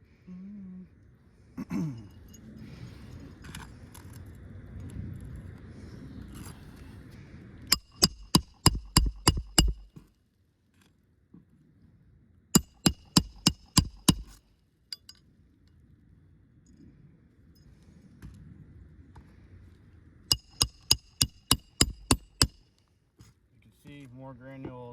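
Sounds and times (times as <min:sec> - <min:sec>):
hammer striking metal nail: 0:07.7 - 0:10.0, 0:12.6 - 0:15.2, 0:20.3 - 0:22.7.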